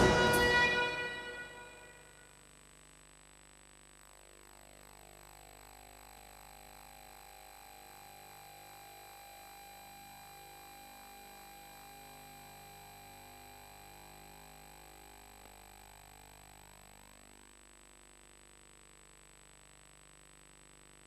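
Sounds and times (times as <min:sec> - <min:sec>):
thin high whines: 0:00.0 - 0:02.2.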